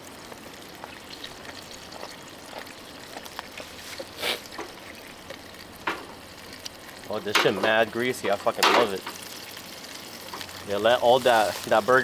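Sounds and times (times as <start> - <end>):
burgers sizzling in a pan: 0.0 - 12.0.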